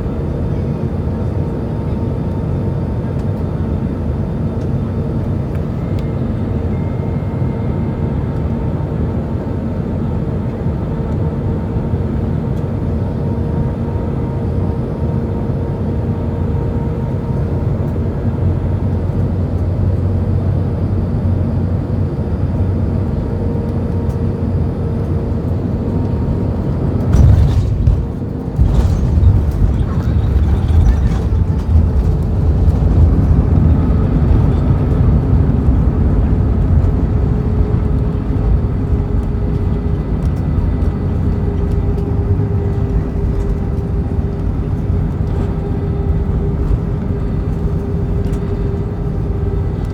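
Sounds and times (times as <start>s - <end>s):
aircraft engine and airflow drone: 0.0s - 49.9s
rumbling and rattling: 25.4s - 49.9s.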